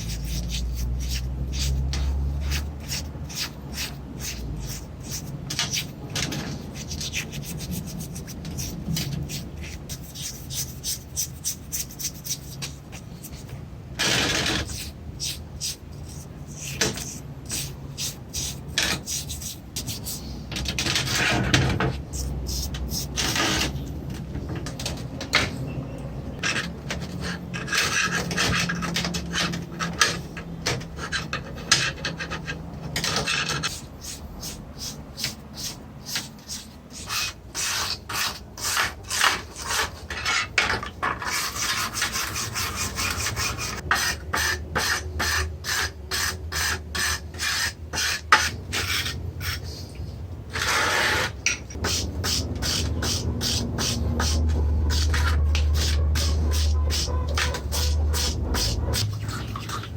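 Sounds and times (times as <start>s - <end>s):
file rasping on rusty metal: 0.0s - 13.1s, 30.8s - 49.7s, 50.5s - 59.9s.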